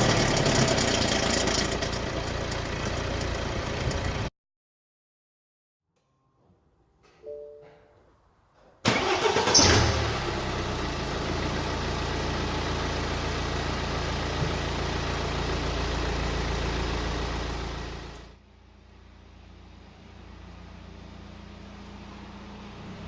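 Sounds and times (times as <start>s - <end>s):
diesel engine starting and idling: 0.0s - 4.3s, 8.8s - 23.0s
short beep: 7.2s - 7.9s.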